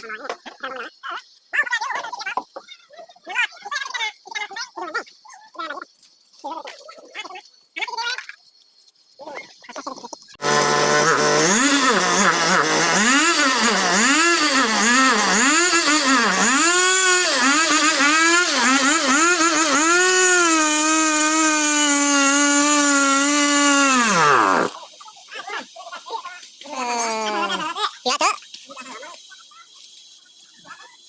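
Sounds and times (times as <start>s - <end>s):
chainsaw engine revving: 10.4s - 24.8s.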